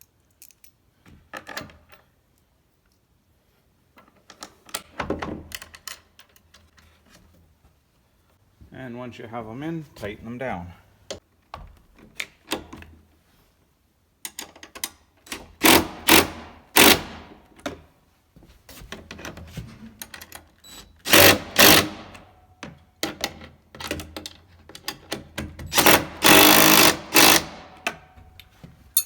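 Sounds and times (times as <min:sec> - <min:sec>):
impact driver hammering: 0:15.6 - 0:17.3, 0:21.1 - 0:22.2, 0:25.7 - 0:28.0.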